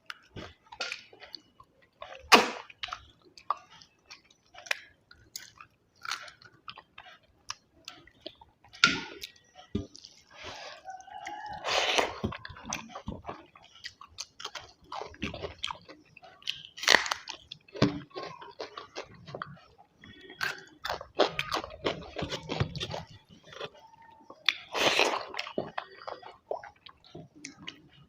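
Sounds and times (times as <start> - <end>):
person chewing food: 0.0 - 28.0
crunchy bites: 16.5 - 18.0.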